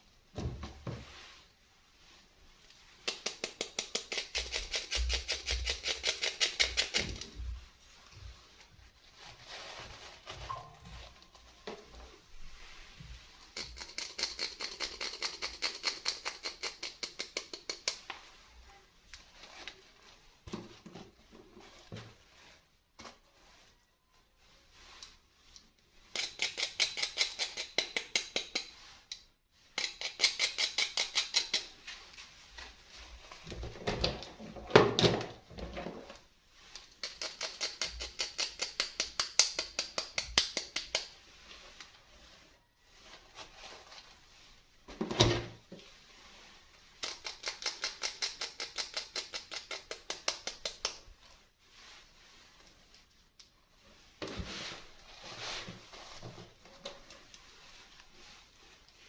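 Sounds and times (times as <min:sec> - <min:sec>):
handling knocks and rustles: 0:00.0 - 0:03.9, 0:18.0 - 0:23.8, 0:31.7 - 0:37.0, 0:43.0 - 0:47.0, 0:50.9 - 0:59.0.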